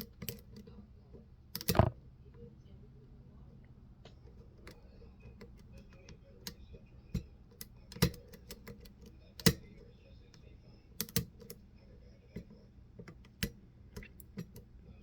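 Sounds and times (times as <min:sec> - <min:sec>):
lock pick clicking on pins: 0:01.6 - 0:01.9, 0:07.2 - 0:09.7, 0:11.0 - 0:11.6.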